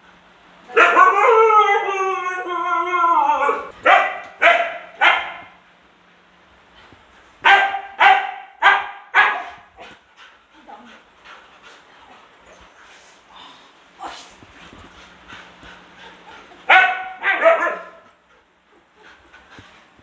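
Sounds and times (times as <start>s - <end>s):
dog howling: 0.7s - 3.7s
dog barking: 3.8s - 5.6s, 7.4s - 9.6s, 16.7s - 18.0s.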